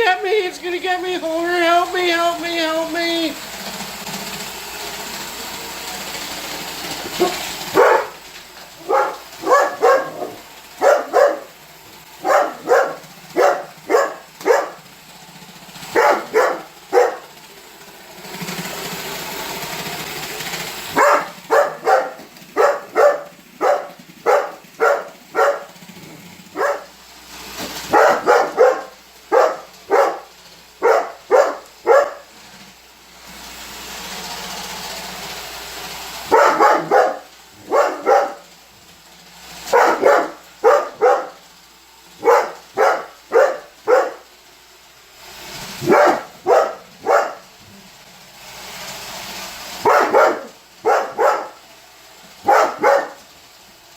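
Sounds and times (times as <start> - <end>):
robot vacuum whirring: 0.0 - 53.9
dog barking: 7.2 - 8.2, 8.8 - 11.5, 12.2 - 14.8, 15.9 - 17.3, 20.9 - 25.8, 26.5 - 26.9, 27.9 - 32.3, 36.3 - 38.4, 39.7 - 41.4, 42.2 - 44.2, 45.8 - 47.4, 49.8 - 51.6, 52.4 - 53.2.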